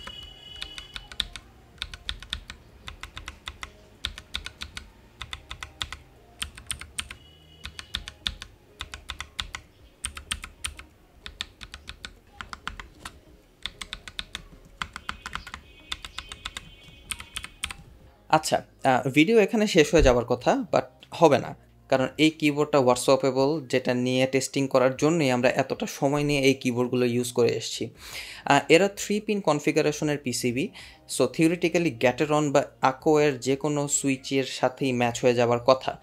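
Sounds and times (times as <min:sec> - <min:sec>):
mechanical keyboard key clicks: 0:00.0 - 0:17.8.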